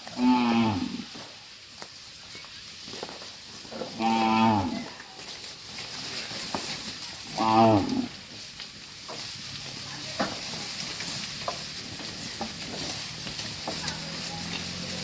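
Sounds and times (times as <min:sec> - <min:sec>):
cow mooing: 0:00.1 - 0:01.1, 0:04.0 - 0:04.9, 0:07.3 - 0:08.1
clicks and knocks of herd moving: 0:00.8 - 0:15.0.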